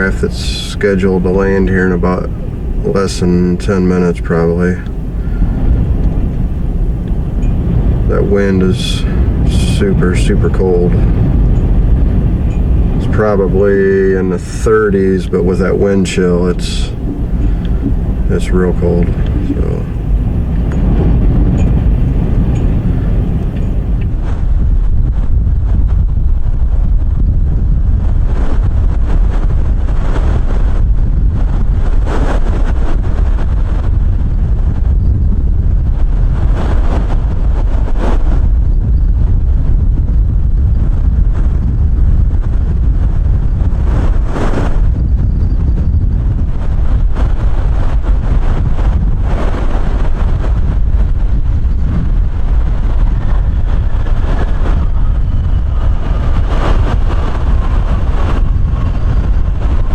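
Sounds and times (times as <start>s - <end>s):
faint thin whine: 0.0s - 24.2s
wind buffeting microphone: 0.0s - 59.9s.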